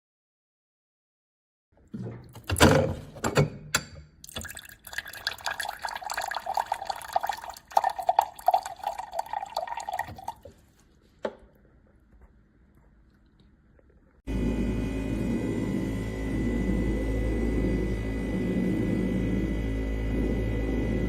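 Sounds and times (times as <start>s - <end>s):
water pouring from cooler: 4.2s - 11.0s.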